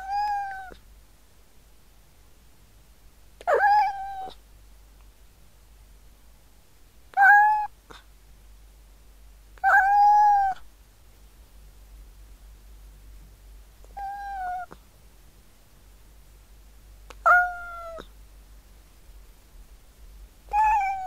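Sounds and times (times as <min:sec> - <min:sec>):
cat meowing: 0:00.0 - 0:00.8, 0:03.4 - 0:04.4, 0:07.1 - 0:07.8, 0:09.6 - 0:10.6, 0:14.0 - 0:14.8, 0:17.2 - 0:18.1, 0:20.5 - 0:21.0.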